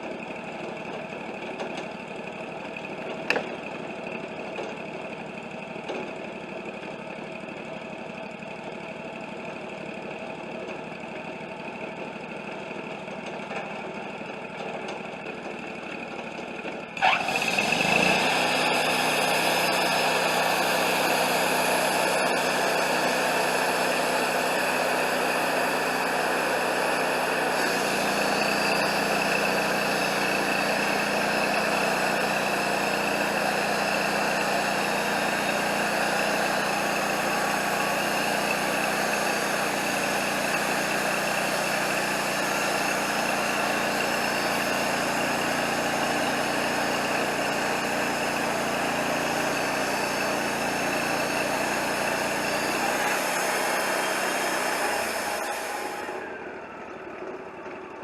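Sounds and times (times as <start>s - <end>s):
band sawmill sawing log: 12.6s - 56.8s.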